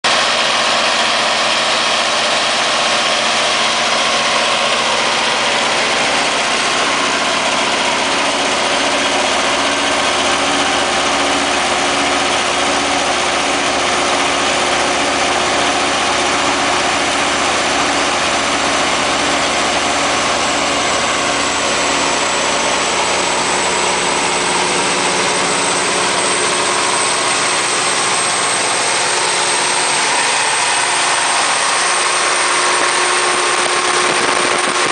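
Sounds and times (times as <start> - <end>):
diesel generator engine running: 0.1 - 34.9.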